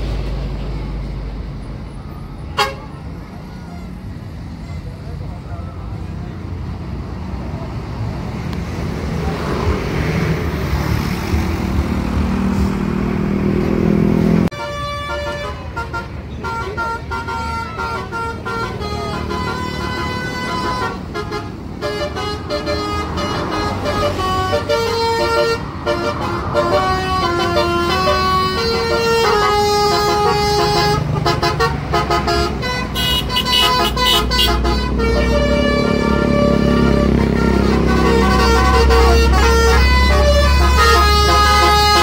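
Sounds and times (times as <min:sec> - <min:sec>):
bus horn playing a tune: 0:02.5 - 0:04.0, 0:14.3 - 0:42.0
bus engine revving: 0:06.0 - 0:15.8, 0:16.4 - 0:42.0.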